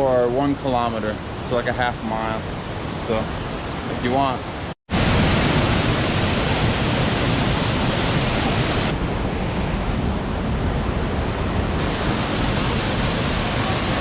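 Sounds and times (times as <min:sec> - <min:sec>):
waterfall and river rushing: 0:00.3 - 0:14.0.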